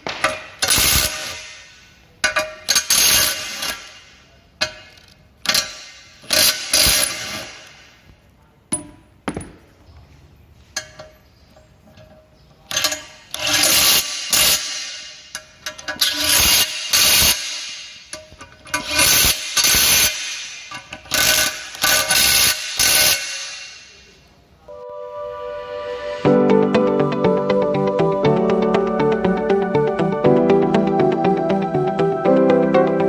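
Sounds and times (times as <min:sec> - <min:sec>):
impact wrench hammering: 0:00.0 - 0:07.8, 0:12.7 - 0:24.1.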